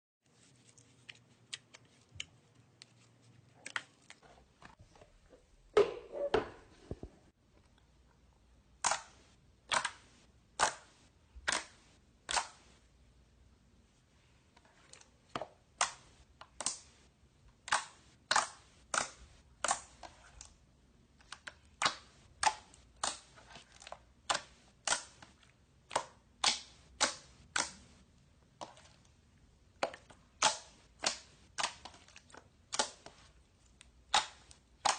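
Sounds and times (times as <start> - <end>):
slime squelch: 0.2 - 5.0, 17.6 - 34.9.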